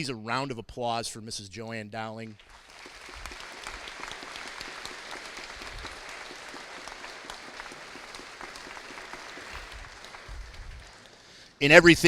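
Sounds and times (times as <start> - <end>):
audience applauding: 2.4 - 11.6.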